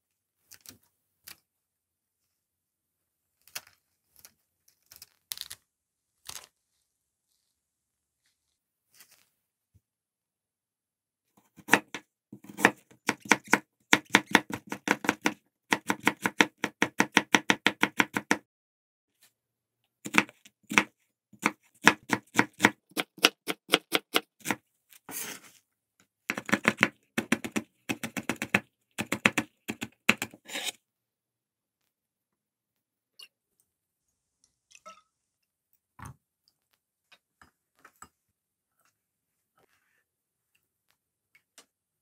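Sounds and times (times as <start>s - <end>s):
knife chopping on cutting board: 11.6s - 18.4s, 20.1s - 24.6s.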